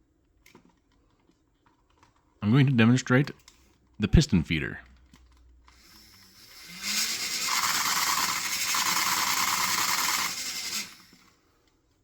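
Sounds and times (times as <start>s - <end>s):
small gearbox motor cycling: 5.6s - 11.4s.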